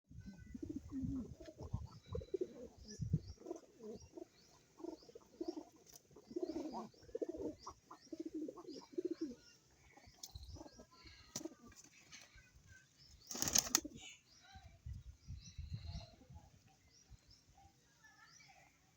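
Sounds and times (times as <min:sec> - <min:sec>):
small birds chirping: 0:00.1 - 0:18.9
pigeons cooing: 0:00.2 - 0:11.9.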